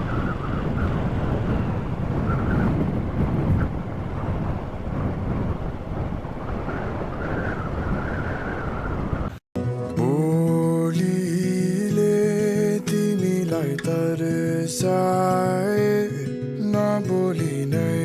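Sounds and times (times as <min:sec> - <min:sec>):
wind buffeting microphone: 0:00.0 - 0:09.4.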